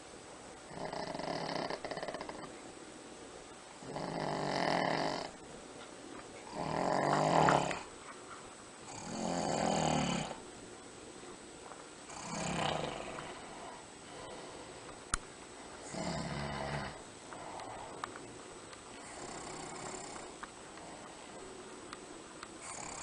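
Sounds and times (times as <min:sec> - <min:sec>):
person snoring: 0:00.7 - 0:02.5, 0:03.8 - 0:05.4, 0:06.5 - 0:07.9, 0:08.9 - 0:10.4, 0:12.1 - 0:14.7, 0:15.8 - 0:18.0, 0:19.0 - 0:20.4, 0:22.6 - 0:23.0.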